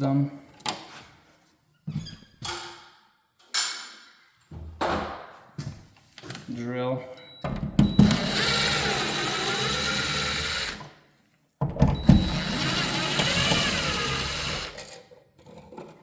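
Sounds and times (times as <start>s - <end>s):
power drill driver running: 7.8s - 10.9s, 12.0s - 14.9s.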